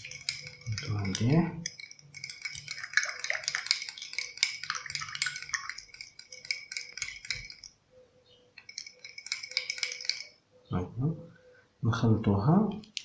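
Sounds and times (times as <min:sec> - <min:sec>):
spoon clinking against glass: 0:00.0 - 0:07.8, 0:08.6 - 0:10.4.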